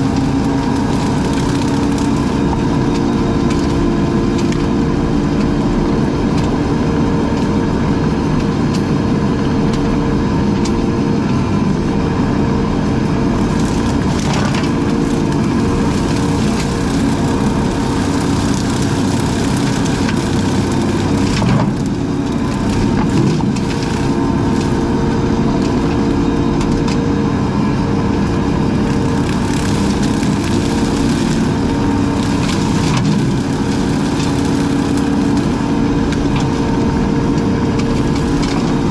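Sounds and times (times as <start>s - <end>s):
sharp wood cracks: 0.0s - 4.7s, 13.4s - 27.0s, 28.8s - 36.7s
wood crunching and splintering: 0.0s - 5.7s, 13.1s - 27.0s, 28.2s - 38.9s
brush-cutting machine engine drone: 0.0s - 38.9s.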